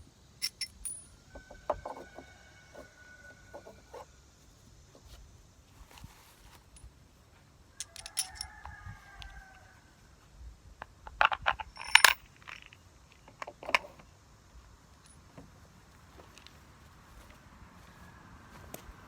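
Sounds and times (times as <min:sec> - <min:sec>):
small metal parts clinking: 0:00.4 - 0:01.2, 0:07.8 - 0:09.3, 0:11.2 - 0:14.0.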